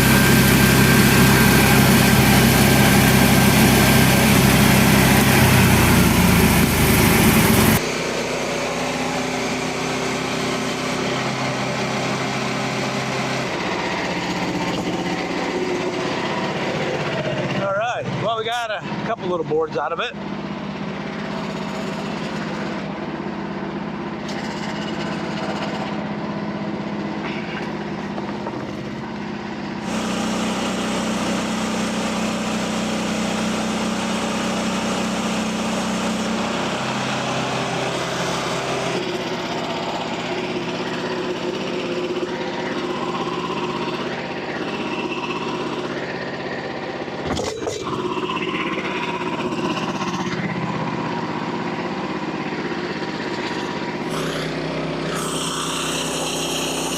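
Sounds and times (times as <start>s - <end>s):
band saw blade cutting log: 0.0s - 8.0s, 29.8s - 46.0s, 52.7s - 56.9s
sawmill engine droning: 0.0s - 56.9s.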